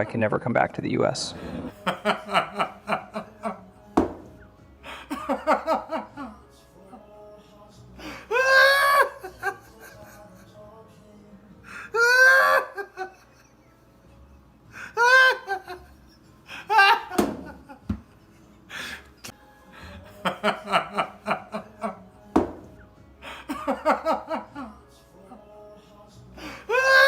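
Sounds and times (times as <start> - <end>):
faint background music: 0.0 - 27.0
person laughing: 11.9 - 13.4.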